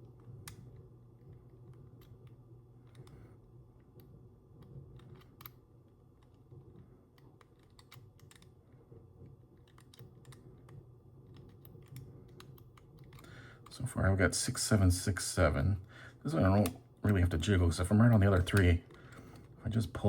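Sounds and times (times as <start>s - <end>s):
padlock wheels clicking: 7.1s - 8.8s, 9.5s - 13.8s.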